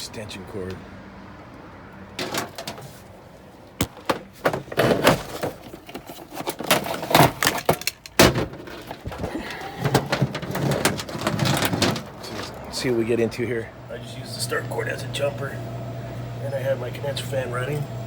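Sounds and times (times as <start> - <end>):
cords and tools rattling: 2.2 - 3.1, 3.8 - 12.9.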